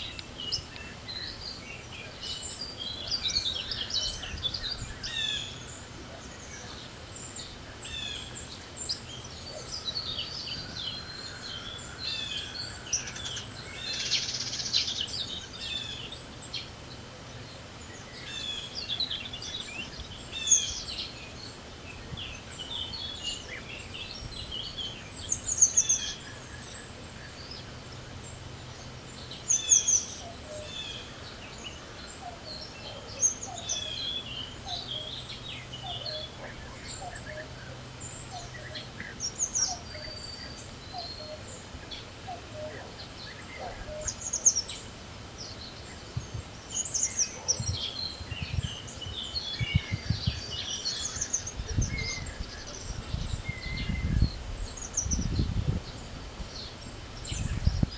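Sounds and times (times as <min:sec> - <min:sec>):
songbirds chirping: 0:00.0 - 0:57.9
wind noise: 0:46.0 - 0:46.6, 0:47.6 - 0:57.9.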